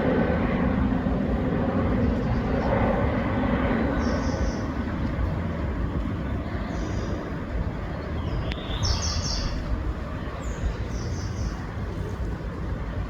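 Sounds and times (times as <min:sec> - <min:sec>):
steady low rumble: 0:00.0 - 0:13.0
small birds chirping: 0:03.9 - 0:04.8, 0:08.0 - 0:11.8.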